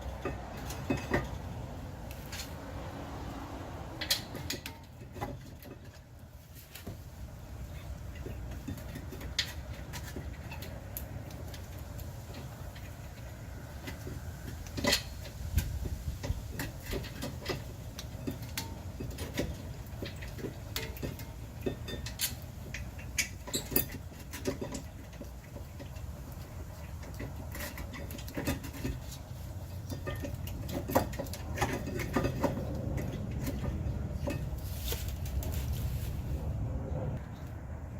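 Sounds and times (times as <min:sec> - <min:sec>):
metal brake parts clicking: 0:04.0 - 0:06.9, 0:07.7 - 0:34.6
steady low rumble: 0:31.3 - 0:37.9.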